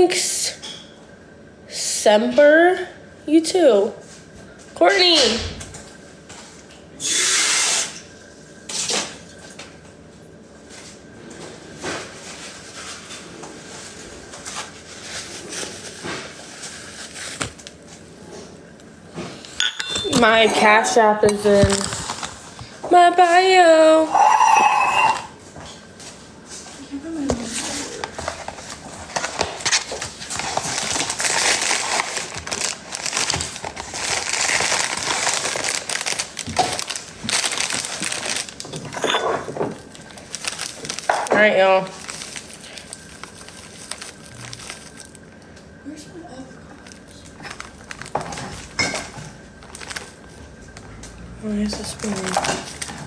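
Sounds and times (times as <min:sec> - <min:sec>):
crinkling and rustling: 0:10.6 - 0:19.4, 0:20.0 - 0:22.9, 0:25.7 - 0:45.8, 0:46.6 - 0:53.0
utensils and dishes clattering: 0:19.2 - 0:22.9, 0:23.9 - 0:25.4, 0:27.4 - 0:40.1, 0:47.4 - 0:50.1, 0:51.6 - 0:53.0.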